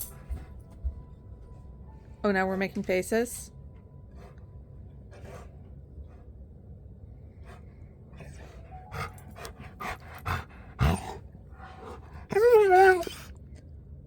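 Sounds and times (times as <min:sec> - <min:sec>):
dog panting: 0:05.1 - 0:06.3, 0:07.4 - 0:13.3.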